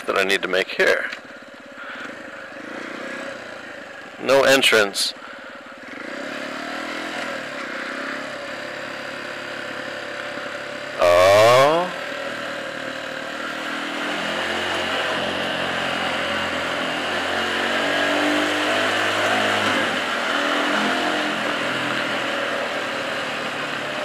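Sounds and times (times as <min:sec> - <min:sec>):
motorcycle engine running: 0:00.0 - 0:24.0.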